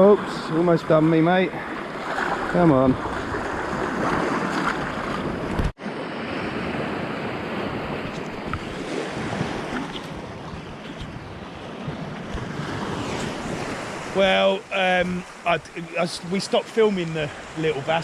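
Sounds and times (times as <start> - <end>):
sea surf washing on shore: 0.0 - 18.0
wind buffeting microphone: 6.4 - 15.5.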